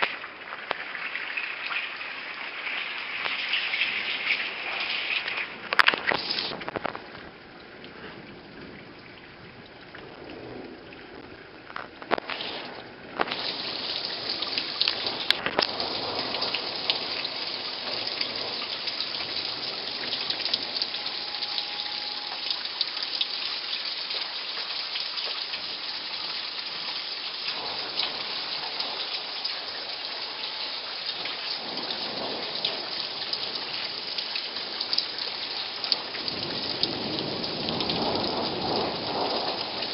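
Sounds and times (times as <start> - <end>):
heavy rain pouring: 0.0 - 39.9
low thunder rumbles: 6.5 - 23.2, 27.5 - 39.9.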